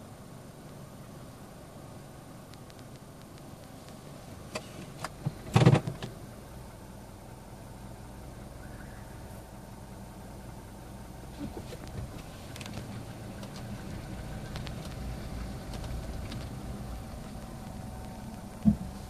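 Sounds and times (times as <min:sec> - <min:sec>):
car engine running: 0:00.0 - 0:19.0
engine knocking: 0:09.7 - 0:19.0.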